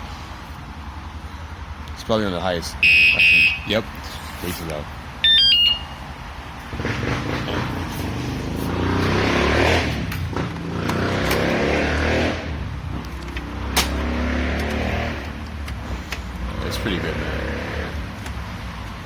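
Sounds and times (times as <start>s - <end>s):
electronic alarm chirp: 2.8s - 3.7s, 5.2s - 6.0s
motor vehicle running: 6.1s - 19.0s.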